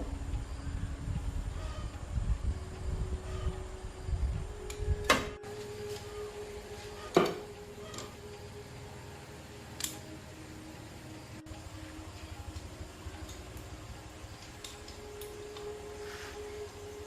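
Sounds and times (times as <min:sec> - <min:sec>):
low rumble: 0:00.0 - 0:05.5
faint steady hum: 0:00.0 - 0:17.0.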